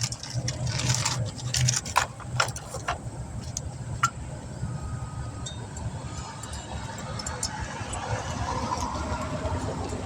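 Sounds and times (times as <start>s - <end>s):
low vehicle hum: 0.0s - 10.0s
metallic clicks of brake pads: 1.8s - 4.2s, 5.4s - 8.0s.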